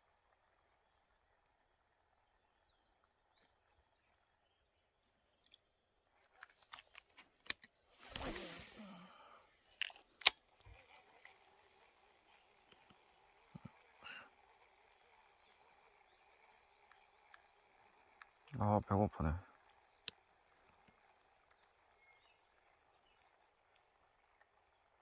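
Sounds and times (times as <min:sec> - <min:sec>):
whooshing rustle: 0:08.0 - 0:09.1
sharp clicks: 0:09.8 - 0:10.4.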